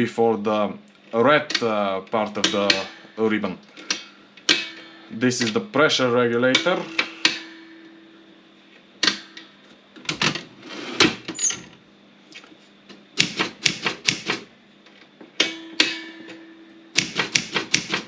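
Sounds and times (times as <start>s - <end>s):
typewriter keys striking: 17.0s - 18.0s.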